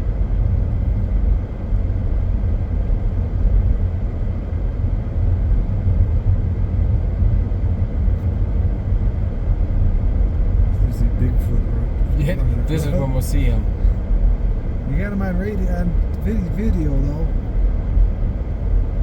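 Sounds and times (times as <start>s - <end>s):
car cabin road and engine rumble: 0.0s - 19.0s.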